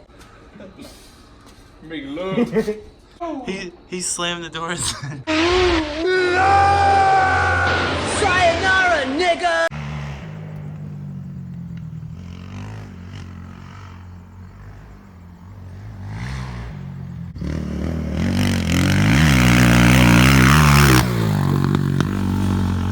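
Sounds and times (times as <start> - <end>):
vehicle engine revving: 9.7 - 22.9.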